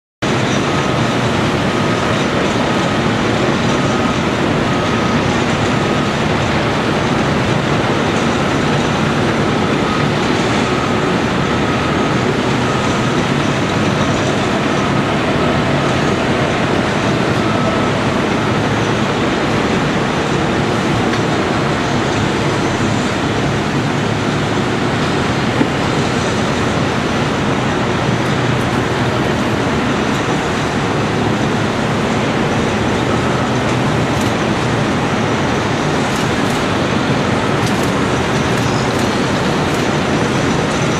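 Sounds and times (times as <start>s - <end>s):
excavator engine and hydraulics: 0.2s - 40.9s
faint machine alarm beeping: 8.3s - 23.2s.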